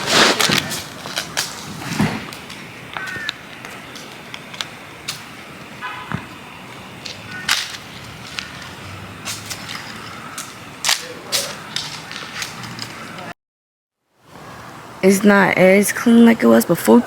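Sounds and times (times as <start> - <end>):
decorations clicking and knocking: 7.0 - 13.3.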